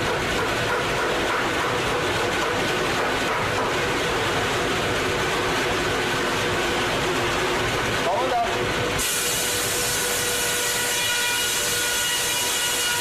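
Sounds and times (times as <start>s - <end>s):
sawmill running: 0.0s - 13.0s.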